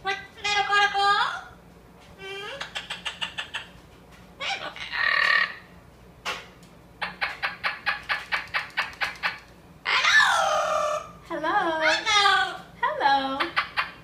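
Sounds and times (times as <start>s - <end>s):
parrot squawk: 2.5s - 3.8s, 4.4s - 5.7s, 7.0s - 11.2s, 11.8s - 12.6s
parrot clucking clicks: 7.0s - 9.6s.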